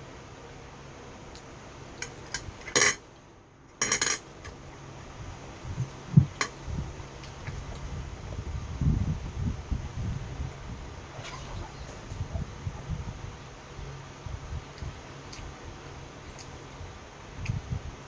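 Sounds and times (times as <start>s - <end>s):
dull low thumps: 5.2s - 13.4s.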